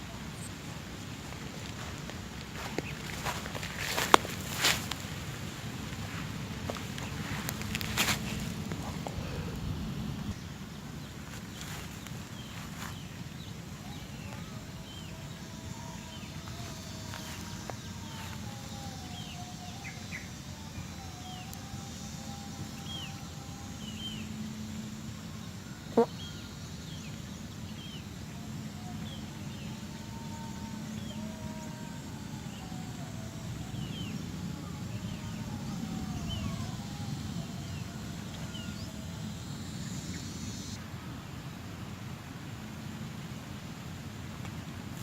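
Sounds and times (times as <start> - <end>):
low engine hum: 0.0 - 19.6.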